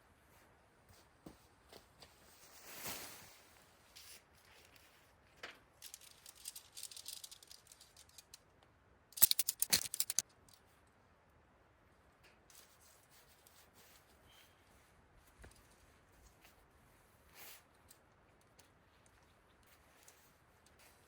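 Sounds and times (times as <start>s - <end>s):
rapid rattling clicks: 5.8s - 8.4s, 9.2s - 10.6s.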